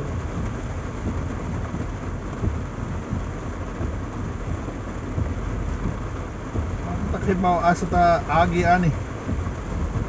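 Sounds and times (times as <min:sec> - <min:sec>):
heavy rain on a car: 0:00.0 - 0:10.0
moving vehicle rumble: 0:00.0 - 0:10.0.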